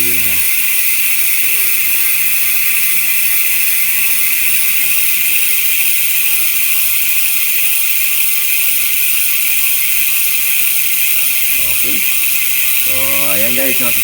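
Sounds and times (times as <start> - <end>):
bicycle hub freewheel buzzing: 0.0 - 14.0.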